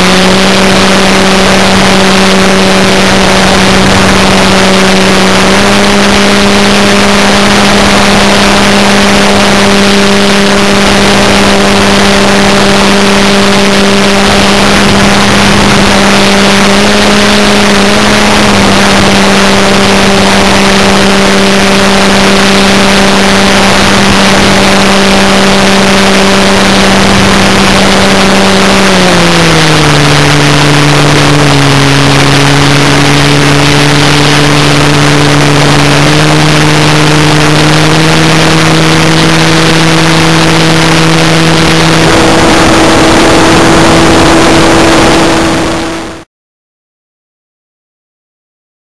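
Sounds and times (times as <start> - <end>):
wind rush on microphone: 0.0 - 46.2
model airplane motor humming: 0.0 - 46.3.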